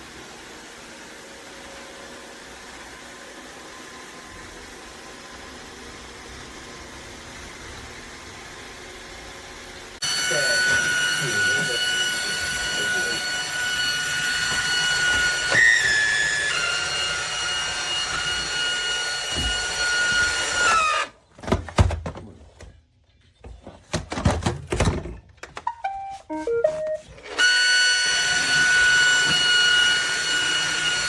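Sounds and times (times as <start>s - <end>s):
robot vacuum motor whine: 10.0s - 21.1s, 27.2s - 31.0s
electronic beeps: 25.7s - 27.0s.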